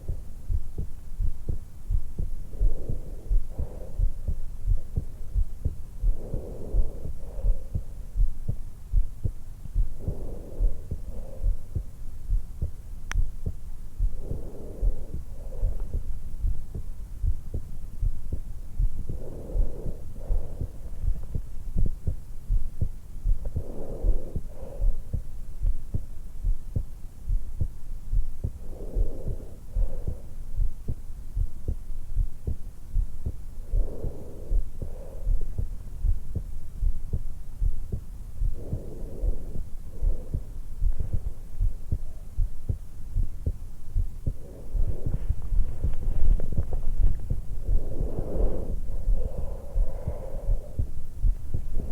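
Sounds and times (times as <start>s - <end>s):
heartbeat through stethoscope: 0.0s - 51.9s
woman breathing: 0.0s - 51.9s.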